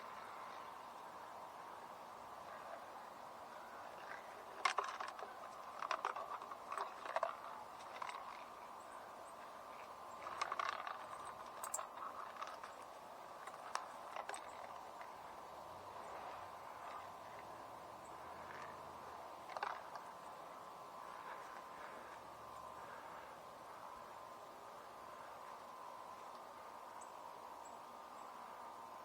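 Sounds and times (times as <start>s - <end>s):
faint steady tone: 0.0s - 29.0s
gear clicking and rattling: 10.2s - 12.8s.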